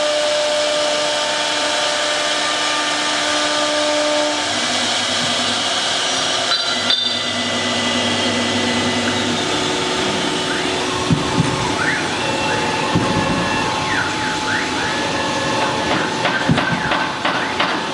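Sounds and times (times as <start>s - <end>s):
wood router running: 0.0s - 17.3s
whining spindle tones: 6.4s - 17.0s.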